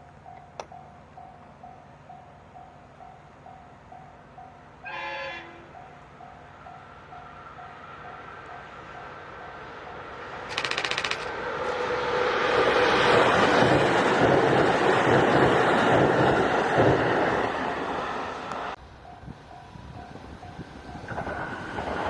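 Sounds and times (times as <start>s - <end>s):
train wheel and motor noise: 0.0s - 22.0s
rapid rattling burst: 10.4s - 11.4s.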